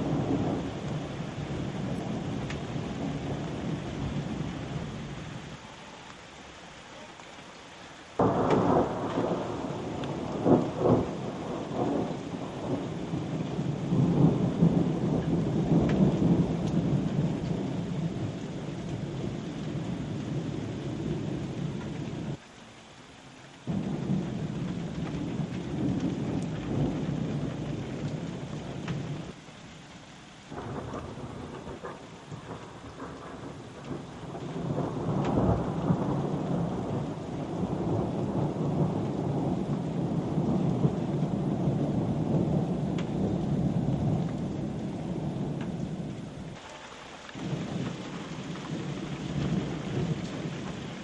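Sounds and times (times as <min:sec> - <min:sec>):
thunder rumbling: 0:00.0 - 0:05.6, 0:08.2 - 0:22.4, 0:23.7 - 0:29.4, 0:30.5 - 0:51.0
rain: 0:00.0 - 0:51.0
sharp thunder cracks: 0:08.2 - 0:18.2, 0:30.5 - 0:46.0.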